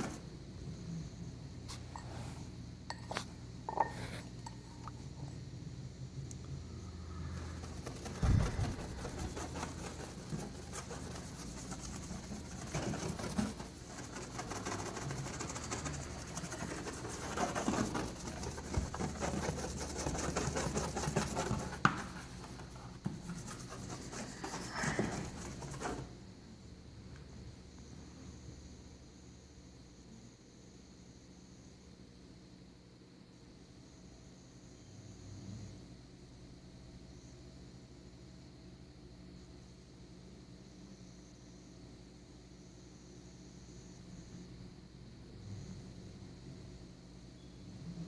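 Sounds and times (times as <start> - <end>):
cloth scrubbing car paint: 7.2 - 26.1.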